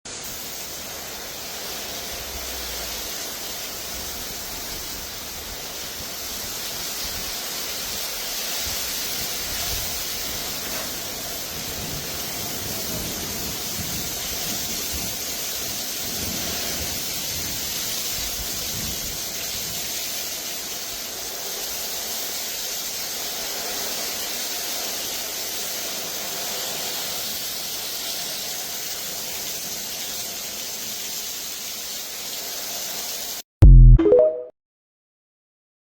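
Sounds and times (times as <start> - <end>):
heavy rain hiss: 0.1 - 33.4.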